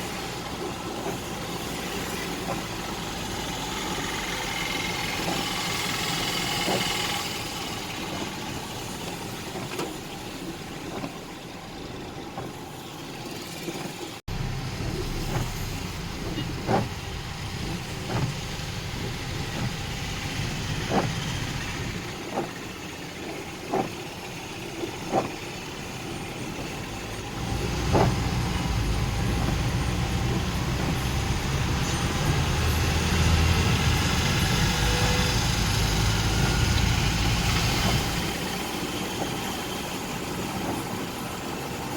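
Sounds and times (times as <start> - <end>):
street traffic engines: 0.0 - 41.9
deep engine rumble: 14.3 - 39.2.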